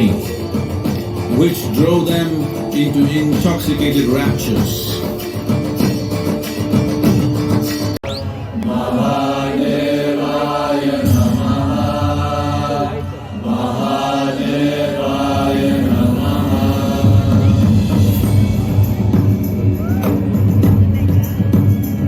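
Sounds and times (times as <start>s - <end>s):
voices chanting: 8.5s - 20.2s
music with low bass: 15.3s - 22.0s.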